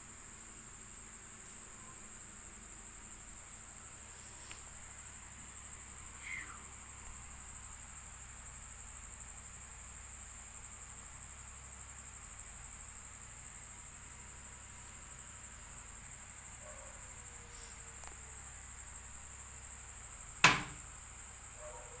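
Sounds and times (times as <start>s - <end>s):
insects trilling: 0.0s - 22.0s
sharp knock: 20.4s - 20.8s.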